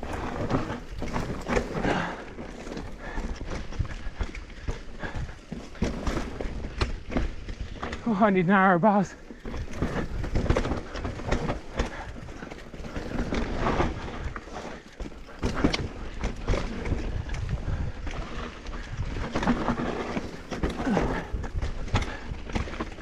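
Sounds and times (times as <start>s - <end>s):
bike rattling and knocking: 0.0s - 23.0s
bike tyres rumbling over rocks: 0.0s - 23.0s
wind buffeting microphone: 15.2s - 22.7s.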